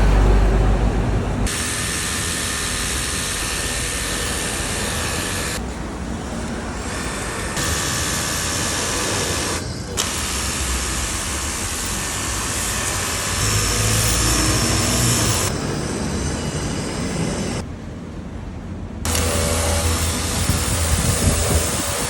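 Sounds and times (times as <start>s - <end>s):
pump humming: 1.4s - 15.6s
pressure washer water jet hissing: 1.4s - 15.7s, 19.1s - 22.0s.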